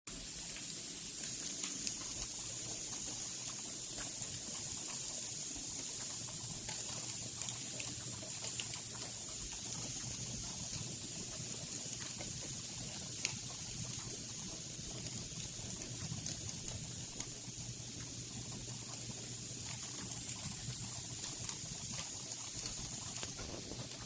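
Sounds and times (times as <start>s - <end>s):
icy precipitation hissing: 0.1s - 24.0s
pellets ticking on surfaces: 0.5s - 24.0s.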